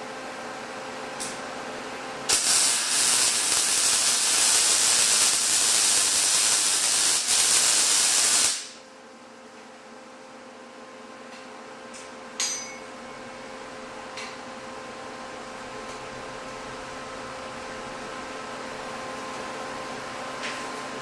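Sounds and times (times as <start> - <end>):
welding arc hissing: 2.3 - 8.8.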